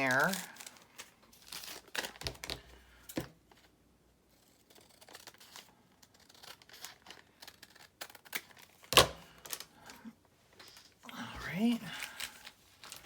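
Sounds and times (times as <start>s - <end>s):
paper rustling: 0.0s - 2.7s, 10.6s - 13.0s.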